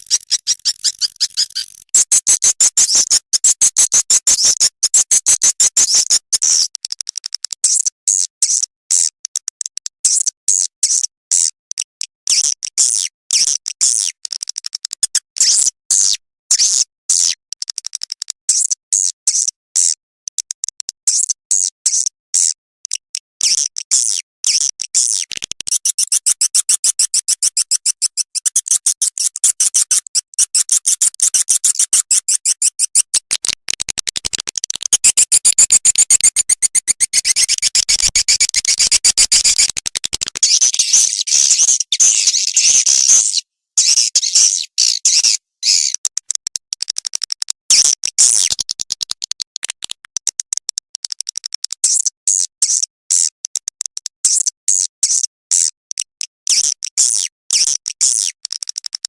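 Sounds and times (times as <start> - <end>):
swiftlet chirps and clicks: 0.0 - 7.4, 24.5 - 51.7.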